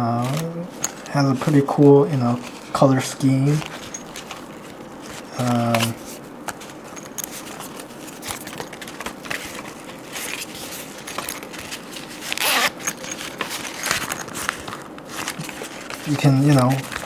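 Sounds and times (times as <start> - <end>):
handling rustle: 0.0 - 17.0
zipper being opened: 10.3 - 17.0.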